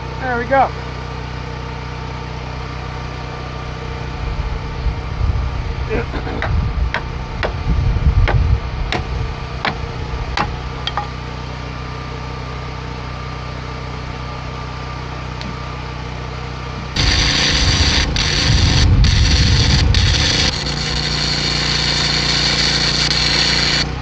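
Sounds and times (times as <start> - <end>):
generator engine running: 0.0 - 24.0
welding arc crackling: 17.0 - 24.0.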